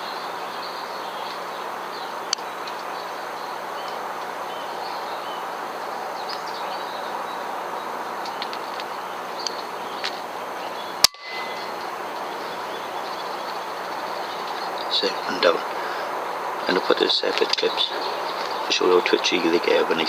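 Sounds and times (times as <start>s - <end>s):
outdoor background hiss: 0.0s - 20.0s.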